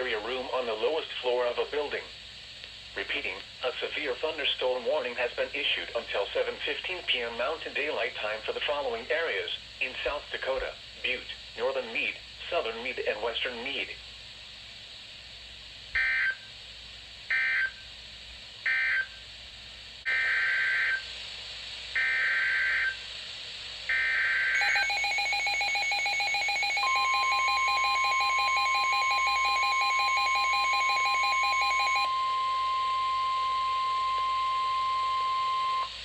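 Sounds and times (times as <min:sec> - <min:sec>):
steady warning alarm tone: 0:16.0 - 0:16.4, 0:17.3 - 0:17.8, 0:18.7 - 0:19.2, 0:20.1 - 0:21.0, 0:22.0 - 0:23.0, 0:23.9 - 0:36.0
digital data squawks: 0:24.6 - 0:32.1.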